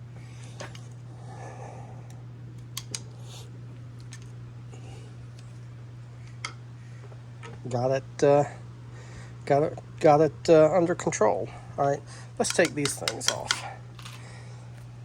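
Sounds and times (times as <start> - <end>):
steady low hum: 0.0 - 15.0
metal tools clicking: 12.4 - 14.2.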